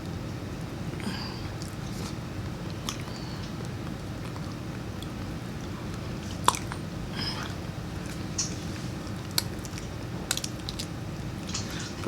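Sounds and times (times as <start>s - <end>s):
low room hum: 0.0s - 12.0s
peanut shells cracking: 9.3s - 11.8s.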